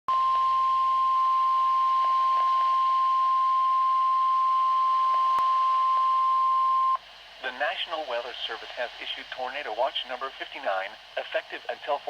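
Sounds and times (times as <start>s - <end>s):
loud pure alarm tone: 0.1s - 7.0s
faint radio hiss: 0.2s - 12.0s.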